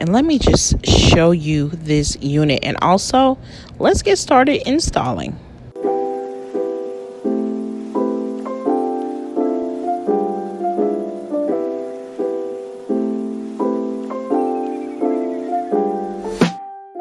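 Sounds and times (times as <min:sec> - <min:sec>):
soft piano chords: 0:05.7 - 0:17.0.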